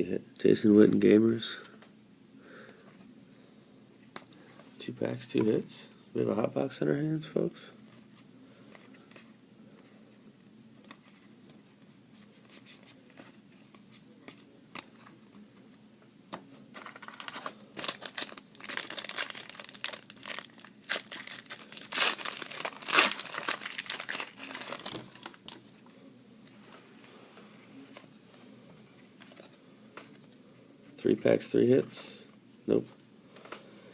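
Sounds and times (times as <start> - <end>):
wrapper tearing and crinkling: 16.8 - 25.6.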